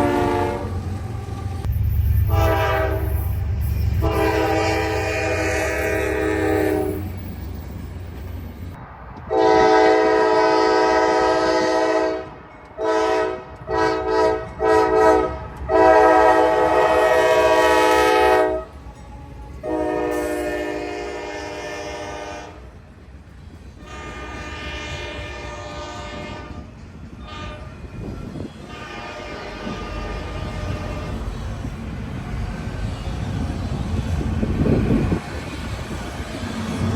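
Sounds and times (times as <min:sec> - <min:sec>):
train horn blasts: 0:00.0 - 0:00.9, 0:01.6 - 0:07.2, 0:09.3 - 0:18.8, 0:19.6 - 0:22.7, 0:23.8 - 0:31.4
steady low rumble: 0:01.5 - 0:05.9.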